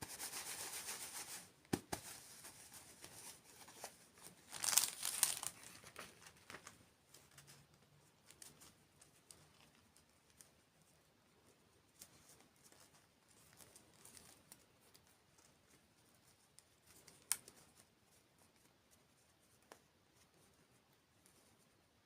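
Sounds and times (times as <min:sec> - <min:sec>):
eating and food handling: 0:03.0 - 0:18.8.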